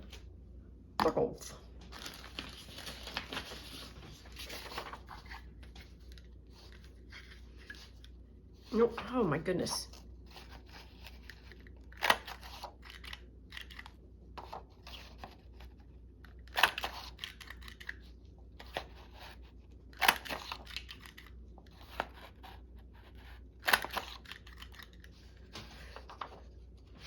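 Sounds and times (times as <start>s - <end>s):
paper rustling and crackling: 1.8s - 9.1s, 18.6s - 27.0s
sharp crisp paper sounds: 1.9s - 8.0s.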